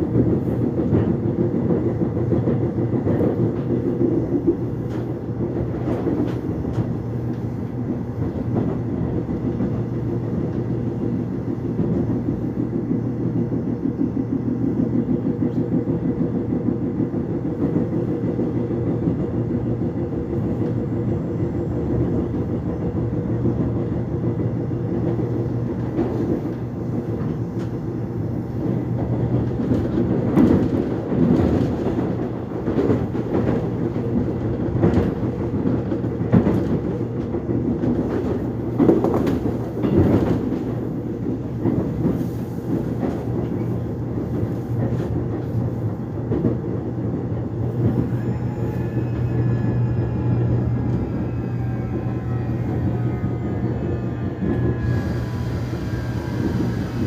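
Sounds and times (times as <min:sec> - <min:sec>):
train wheels rumbling on rails: 0:00.0 - 0:57.0
train motor hum: 0:37.0 - 0:57.0.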